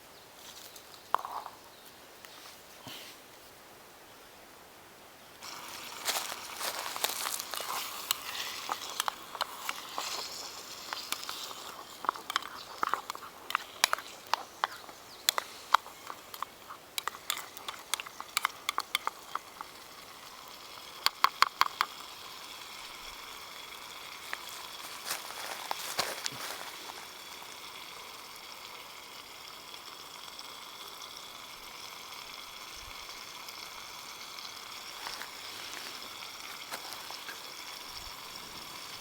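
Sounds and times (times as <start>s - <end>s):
wood fire crackling and popping: 5.4s - 21.9s
food sizzling in oil: 5.4s - 39.0s.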